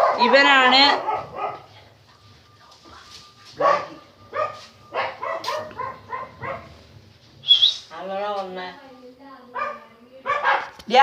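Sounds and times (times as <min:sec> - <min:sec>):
dogs barking: 0:00.0 - 0:01.8, 0:03.6 - 0:06.9, 0:09.5 - 0:11.0
high-pitched dog yelp: 0:03.6 - 0:06.8.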